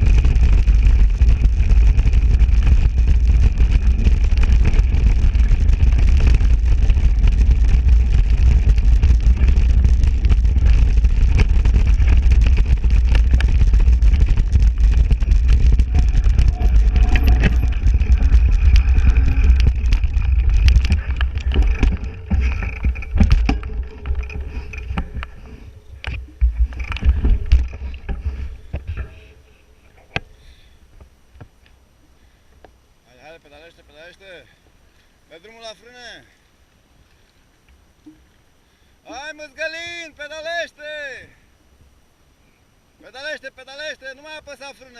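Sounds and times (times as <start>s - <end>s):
wind buffeting microphone: 0.0s - 30.3s
tyres rumbling over rough ground: 0.0s - 31.6s
bike knocking and rattling: 0.0s - 31.7s.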